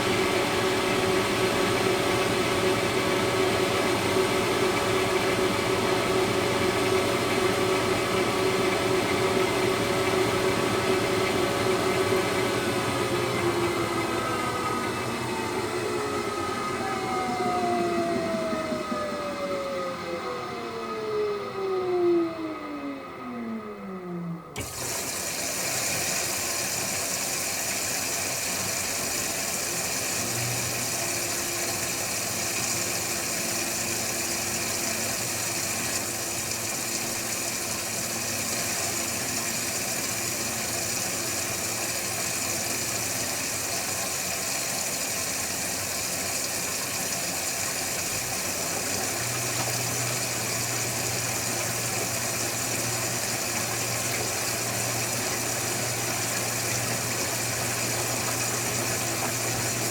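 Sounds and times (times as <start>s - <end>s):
washing machine whirring: 0.0s - 59.9s.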